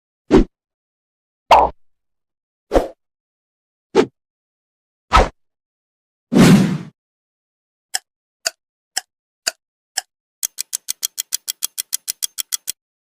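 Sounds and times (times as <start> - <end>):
sharp clock ticks: 7.9 - 12.8.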